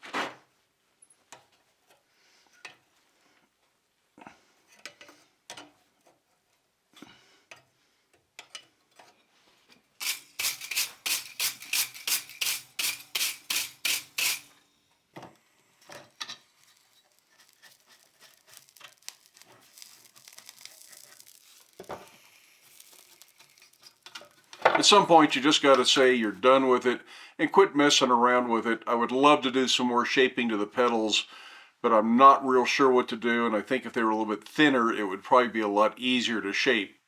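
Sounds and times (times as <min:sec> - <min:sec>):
faint steady hiss: 0:09.3 - 0:37.0
hand tool scraping iron: 0:10.0 - 0:14.6, 0:16.1 - 0:26.3.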